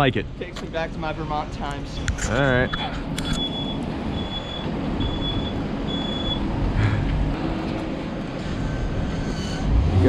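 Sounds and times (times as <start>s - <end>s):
high electronic beep: 2.0s - 6.4s
vehicle engine running: 2.4s - 10.0s.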